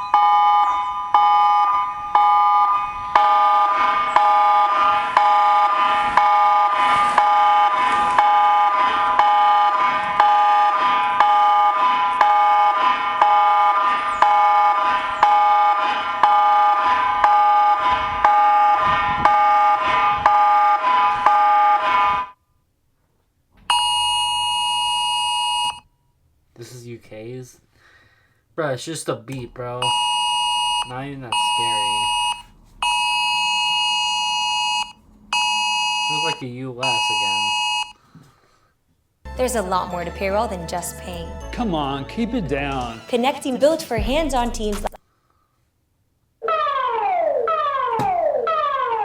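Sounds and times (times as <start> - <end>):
pulsing alarm tone chord: 0.0 - 22.0, 39.3 - 44.8.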